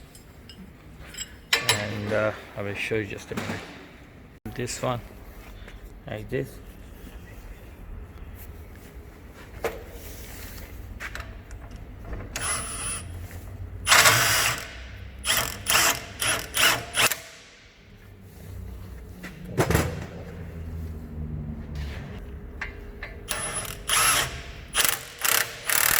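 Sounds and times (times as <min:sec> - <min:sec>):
ratchet wrench strokes: 0:12.4 - 0:13.1, 0:13.9 - 0:17.5, 0:23.3 - 0:25.9.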